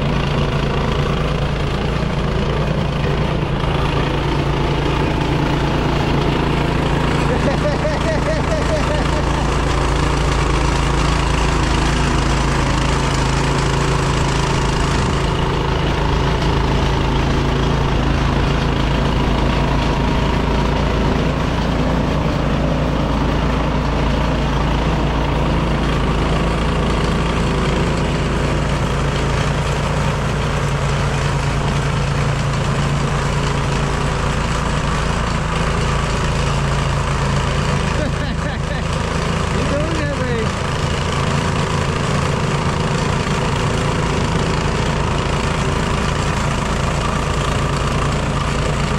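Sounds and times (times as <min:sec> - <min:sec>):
snowblower engine running: 0:00.0 - 0:48.9.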